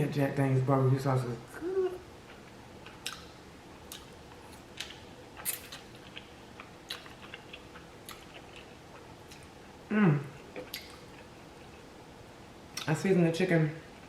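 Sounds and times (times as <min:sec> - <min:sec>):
person chewing with wet smacks: 0:02.2 - 0:09.6, 0:10.4 - 0:11.9, 0:12.7 - 0:13.0.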